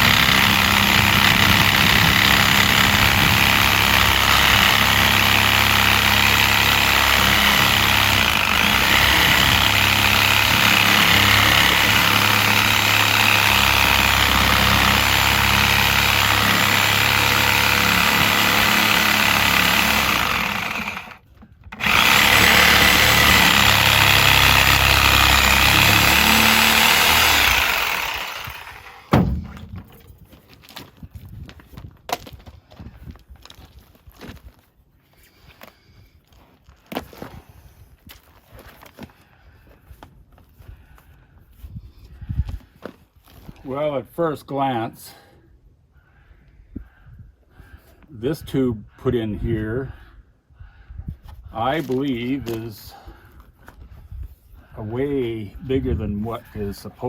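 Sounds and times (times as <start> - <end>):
reciprocating saw cutting rubber: 0.0 - 30.0
sharp knock: 29.1 - 30.1.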